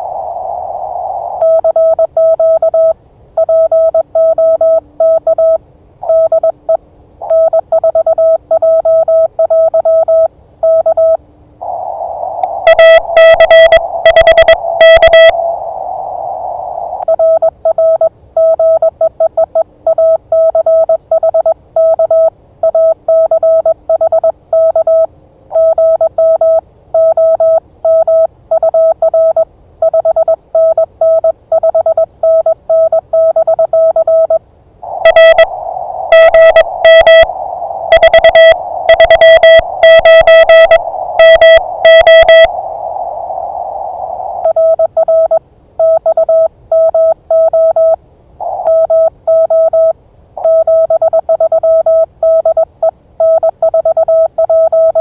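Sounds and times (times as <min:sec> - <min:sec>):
radio band hiss: 0:00.0 - 0:02.2, 0:11.6 - 0:17.1, 0:34.8 - 0:44.5
morse code tone: 0:01.4 - 0:06.6, 0:07.3 - 0:11.2, 0:12.6 - 0:15.4, 0:17.1 - 0:34.4, 0:35.0 - 0:42.6, 0:44.4 - 0:55.0
loud harsh keyed tone: 0:12.7 - 0:15.5, 0:34.9 - 0:42.6.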